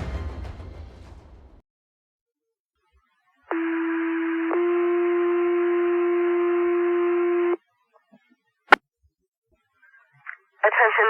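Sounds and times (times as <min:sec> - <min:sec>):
radio hiss: 0:10.2 - 0:11.0.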